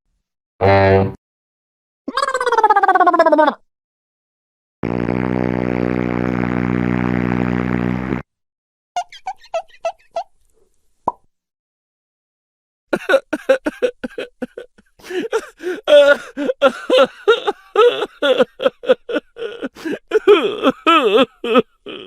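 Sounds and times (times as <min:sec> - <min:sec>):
high-pitched voice laughing: 0:02.1 - 0:03.6.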